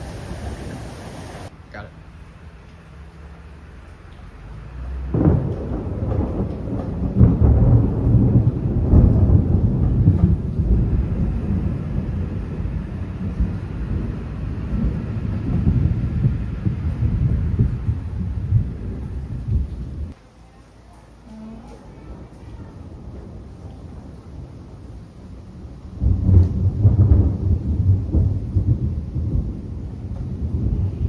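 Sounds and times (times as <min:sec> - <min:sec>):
thunder rumbling: 0:00.0 - 0:01.5, 0:03.4 - 0:20.2, 0:21.3 - 0:31.0
thunder crack: 0:05.0 - 0:20.2, 0:21.8 - 0:31.0.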